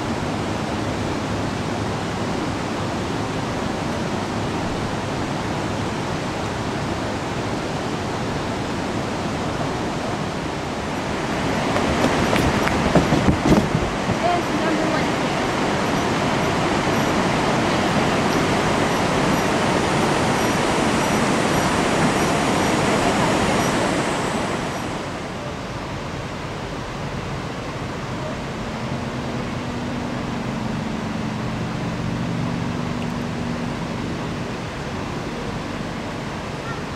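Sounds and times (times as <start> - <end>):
waterfall and rapids rushing: 0.0 - 36.9.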